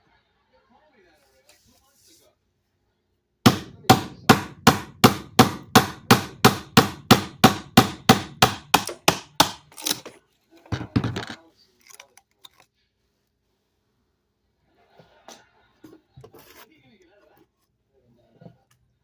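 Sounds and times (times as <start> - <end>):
hammer blows: 3.5 - 9.6.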